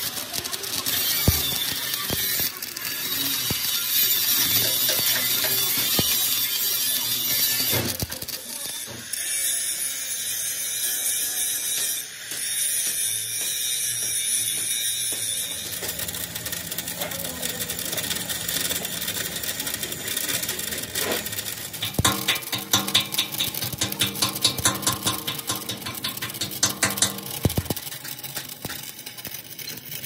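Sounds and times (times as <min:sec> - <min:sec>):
dense crackle: 0:00.0 - 0:08.8, 0:15.4 - 0:30.0
sharp regular ticks: 0:15.3 - 0:30.0.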